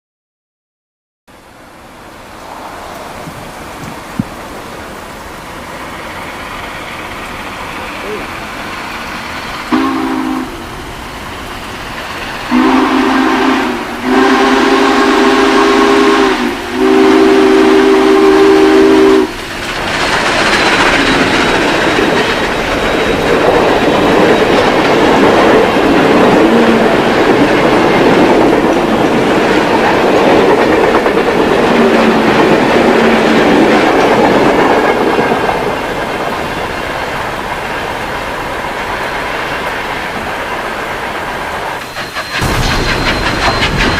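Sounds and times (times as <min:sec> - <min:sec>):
steam train passing: 0:01.3 - 0:43.9
steam locomotive whistle blasts: 0:09.7 - 0:10.6, 0:12.5 - 0:19.4.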